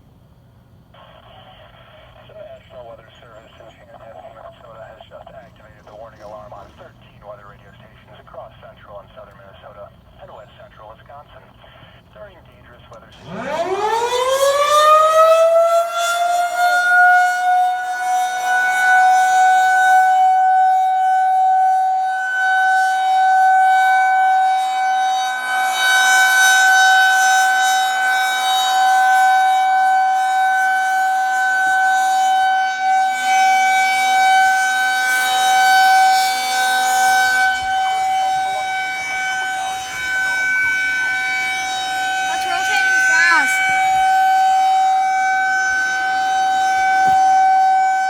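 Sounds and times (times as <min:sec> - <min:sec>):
rotating warning siren: 0:12.2 - 0:48.0.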